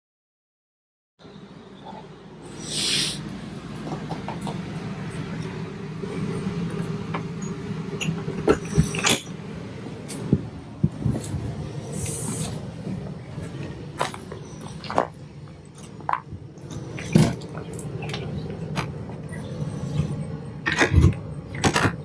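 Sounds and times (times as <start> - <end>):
steady mechanical hum: 1.2 - 22.0
brief hiss: 2.6 - 3.2
clinks and knocks: 3.8 - 11.5.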